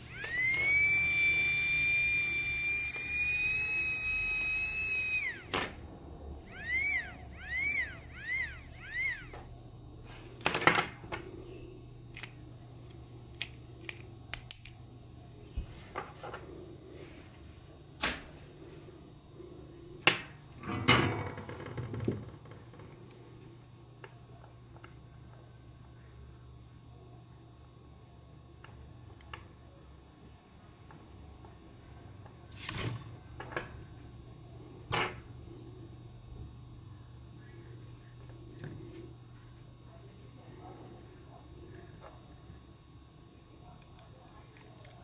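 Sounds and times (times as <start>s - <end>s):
electric motor whining: 0.0s - 5.8s, 6.4s - 9.7s
short whirs: 0.0s - 9.7s.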